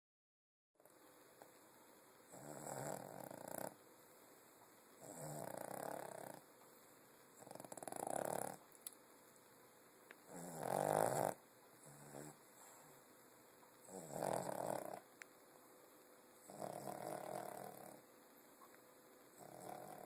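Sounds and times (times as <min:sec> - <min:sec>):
pet snoring: 0:02.3 - 0:03.8, 0:05.0 - 0:06.5, 0:07.4 - 0:08.6, 0:10.2 - 0:12.9, 0:13.8 - 0:15.1, 0:16.4 - 0:18.0, 0:19.3 - 0:20.0.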